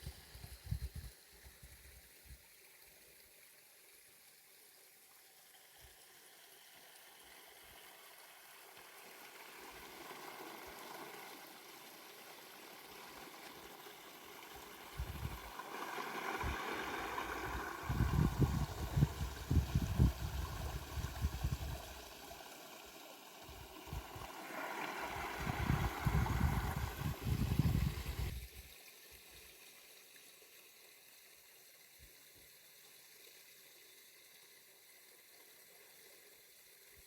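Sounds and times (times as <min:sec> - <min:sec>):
running water gurgling: 0:00.0 - 0:37.0.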